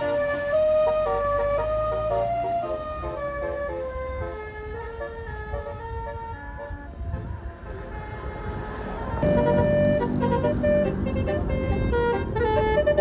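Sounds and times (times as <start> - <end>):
bus engine running: 8.7 - 13.0
multi-note bus horn tune: 9.2 - 13.0.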